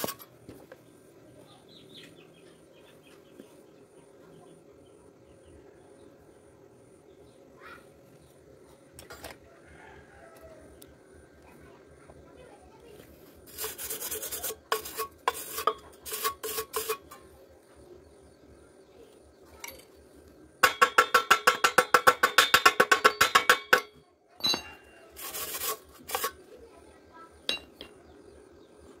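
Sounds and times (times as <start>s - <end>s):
metal clanging on steel tubing: 13.5s - 17.3s, 20.6s - 26.4s, 27.5s - 27.9s.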